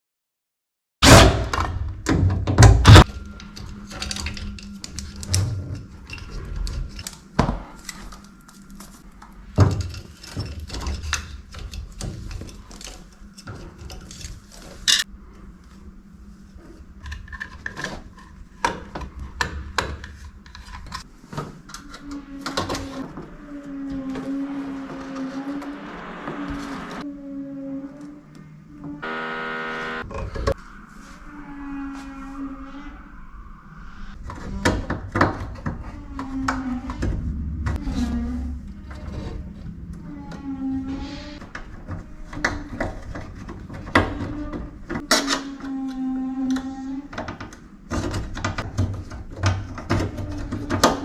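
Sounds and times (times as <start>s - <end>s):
clicks and knocks of handled tools: 3.0s - 8.2s
steady low hum: 29.0s - 30.1s.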